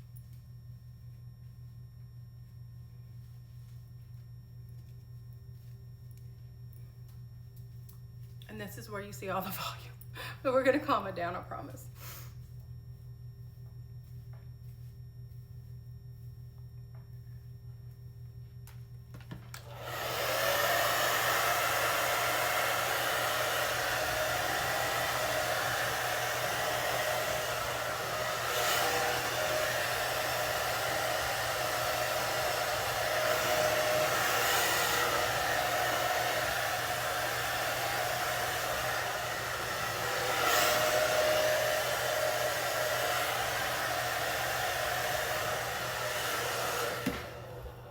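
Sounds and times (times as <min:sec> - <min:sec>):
faint hum: 0:00.0 - 0:19.7
hair dryer blowing: 0:08.5 - 0:12.4, 0:19.3 - 0:47.9.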